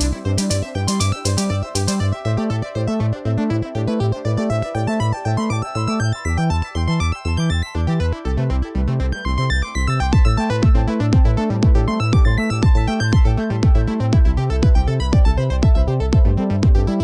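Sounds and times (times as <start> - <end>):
electronic dance music: 0.0 - 2.2
steady kick drum: 10.1 - 17.0.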